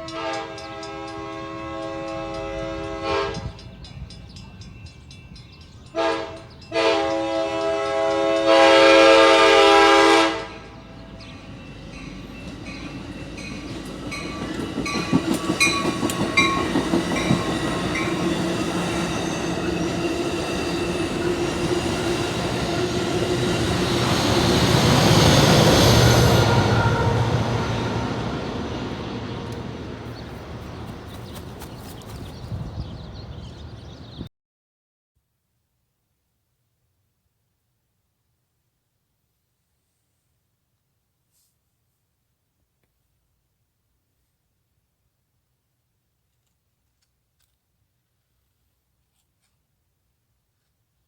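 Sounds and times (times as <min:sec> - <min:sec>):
train horn blast: 0:00.0 - 0:03.7, 0:05.9 - 0:11.0, 0:18.0 - 0:31.4
train rumble: 0:00.0 - 0:34.3
train wheels clicking over rail joints: 0:11.2 - 0:25.0.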